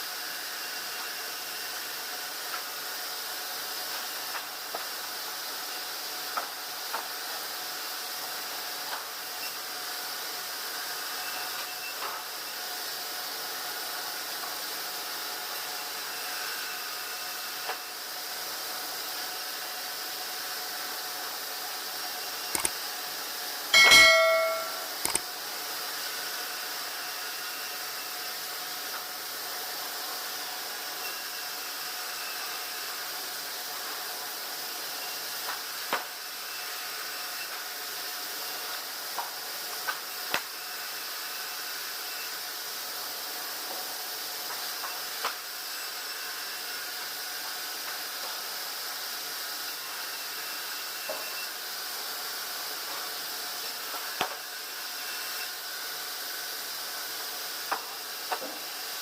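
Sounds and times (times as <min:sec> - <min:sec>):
loud metallic clang: 0:23.8 - 0:25.0.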